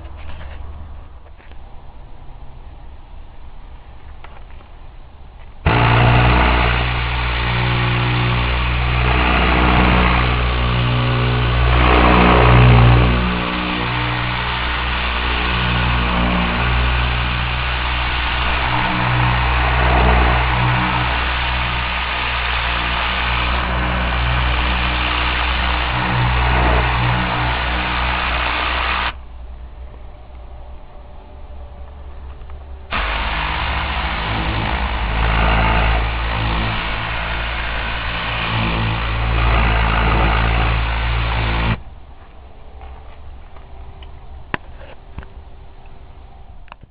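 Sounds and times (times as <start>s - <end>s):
compressed air hissing: 5.6s - 29.2s, 32.9s - 41.8s
low buzz of nozzle tube: 5.6s - 29.2s, 32.9s - 41.8s.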